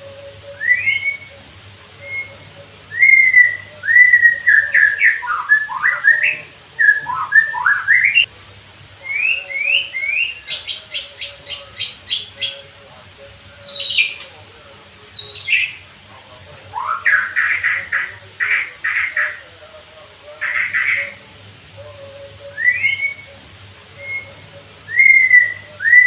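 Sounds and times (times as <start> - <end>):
bird singing whistled notes: 0.0 - 8.3, 9.0 - 12.7, 13.5 - 14.4, 15.2 - 15.8, 16.7 - 19.4, 20.4 - 26.0.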